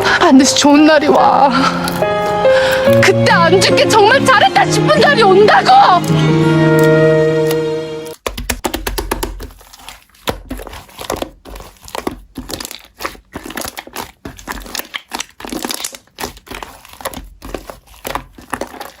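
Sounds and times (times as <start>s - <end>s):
slime crackling and popping: 8.1s - 19.0s.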